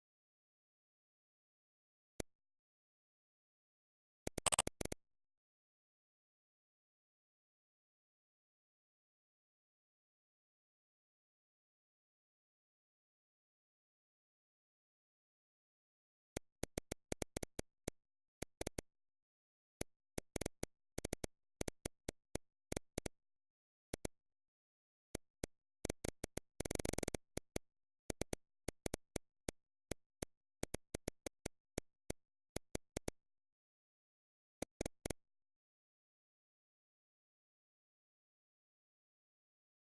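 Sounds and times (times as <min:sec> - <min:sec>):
computer mouse clicking: 0:04.3 - 0:04.9.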